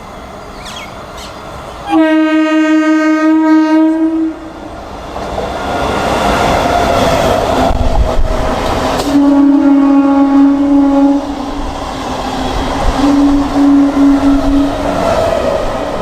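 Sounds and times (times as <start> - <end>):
train rumble and rail noise: 0.0 - 16.0
train horn blast: 1.8 - 4.6, 9.0 - 11.3, 13.0 - 14.7.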